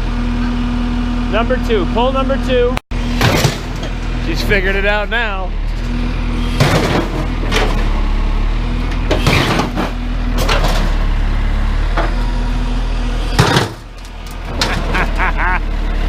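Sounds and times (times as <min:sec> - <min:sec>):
diesel engine running: 0:00.0 - 0:16.0
metal clanks and crunches: 0:03.1 - 0:04.2, 0:05.7 - 0:08.0, 0:08.8 - 0:11.1, 0:13.3 - 0:15.2.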